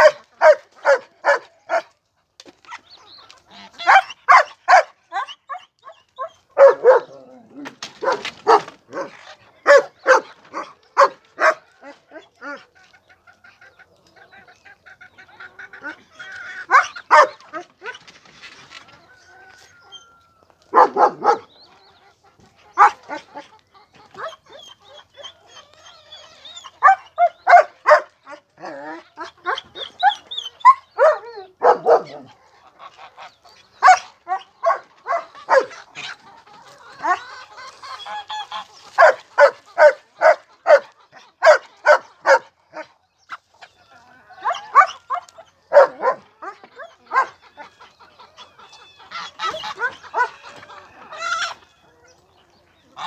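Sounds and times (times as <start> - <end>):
animals crying loudly: 22.8 - 42.9, 43.9 - 52.0.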